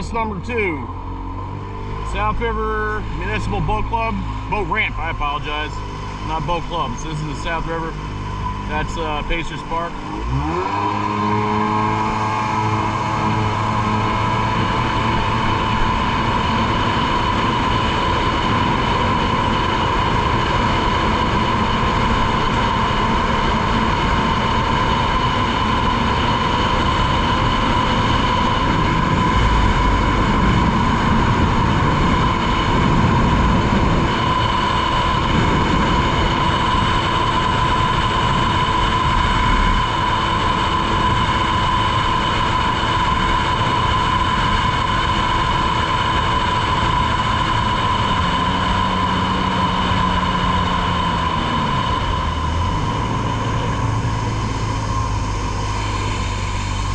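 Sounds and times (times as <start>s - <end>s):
personal watercraft whining: 0.0s - 56.9s
rushing water noise: 48.3s - 56.9s.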